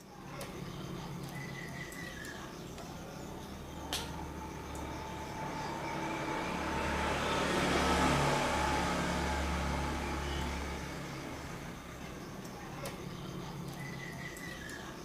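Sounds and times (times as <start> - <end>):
vehicle passing by: 2.8 - 14.3.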